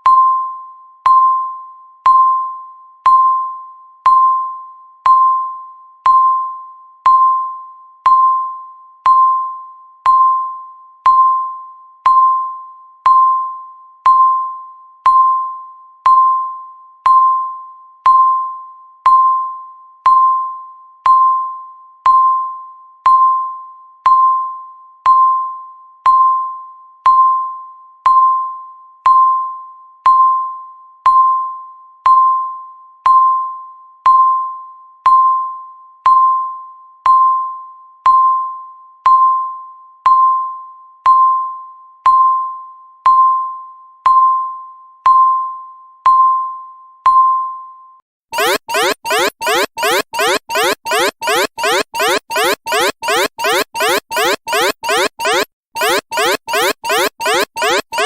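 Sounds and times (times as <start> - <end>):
countdown timer beeping: 48.4 - 58.0.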